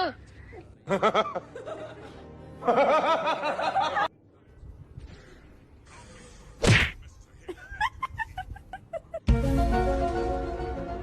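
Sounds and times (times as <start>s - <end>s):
background music: 0.8s - 4.1s, 9.2s - 11.0s.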